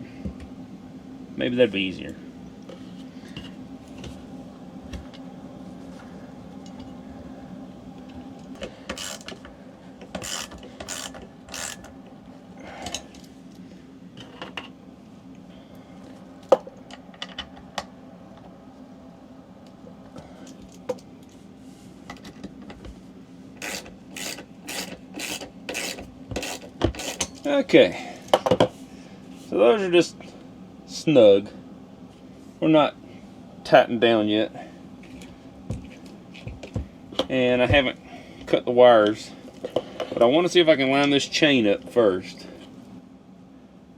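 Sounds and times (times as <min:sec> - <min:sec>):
screwdriver rasping strokes: 0:08.9 - 0:09.4, 0:10.2 - 0:11.8, 0:23.6 - 0:27.2.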